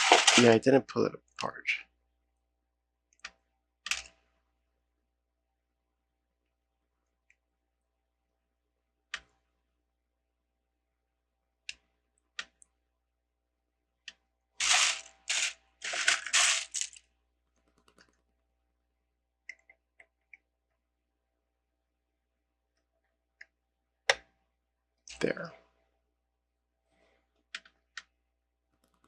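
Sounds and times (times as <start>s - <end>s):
plastic bricks clattering: 0.0s - 0.6s, 14.6s - 17.0s
plastic bricks clicking: 0.0s - 0.6s, 14.6s - 17.0s.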